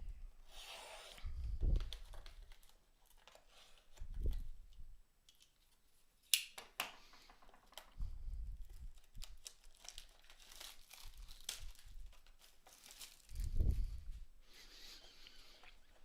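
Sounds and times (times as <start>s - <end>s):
plastic wrap crinkling and tearing: 1.7s - 4.5s, 8.6s - 14.0s.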